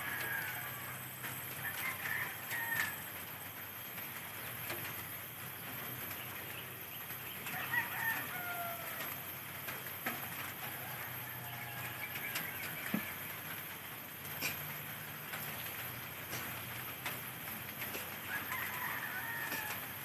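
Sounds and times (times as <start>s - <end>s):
rooster crowing: 0.0s - 3.2s, 7.5s - 9.2s, 10.4s - 13.1s, 17.9s - 20.0s.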